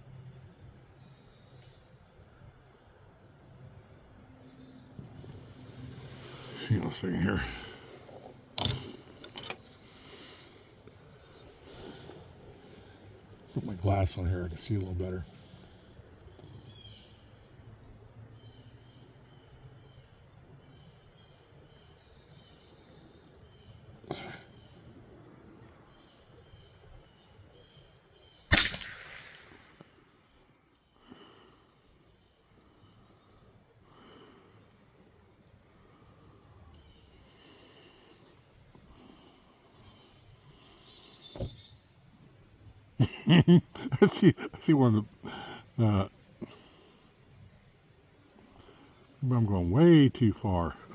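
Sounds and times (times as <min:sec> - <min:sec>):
insect buzz: 0:00.0 - 0:50.9
rifle shot: 0:28.5 - 0:29.9.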